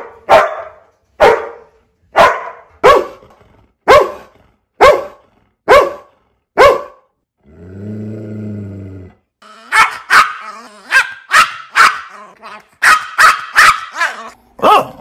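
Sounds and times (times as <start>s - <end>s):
dog barking: 0.0s - 3.2s, 3.8s - 7.1s, 9.7s - 14.9s
dog growling: 7.4s - 11.0s.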